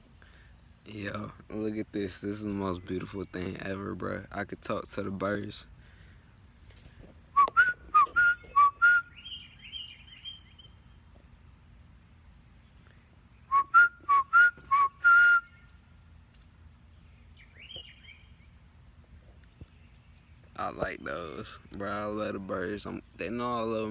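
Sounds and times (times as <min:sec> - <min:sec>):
bird chirping: 0:00.0 - 0:05.3, 0:07.4 - 0:23.9
man whistling: 0:07.4 - 0:09.2, 0:13.5 - 0:15.6.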